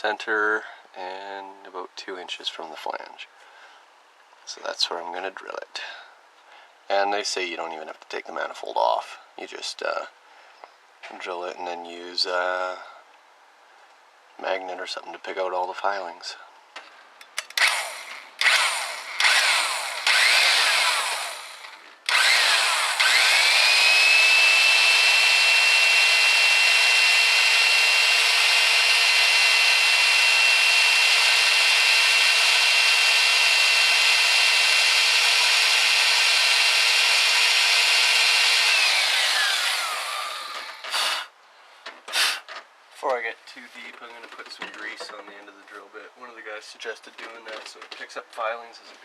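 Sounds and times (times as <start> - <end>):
electric drill whining: 17.5 - 41.3, 42.1 - 42.5.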